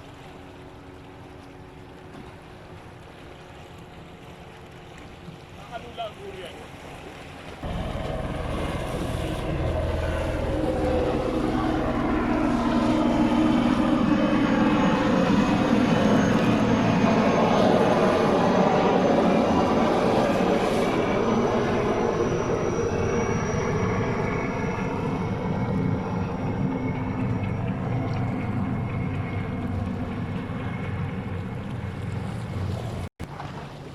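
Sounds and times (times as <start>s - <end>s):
engine drone: 7.6s - 33.1s.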